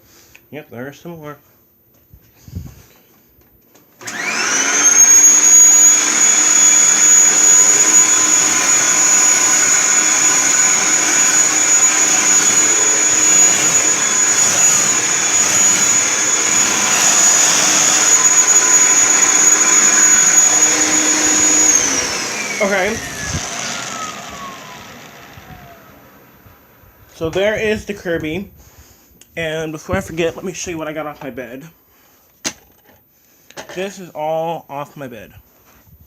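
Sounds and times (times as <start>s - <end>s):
vacuum cleaner whining: 4.0s - 27.5s.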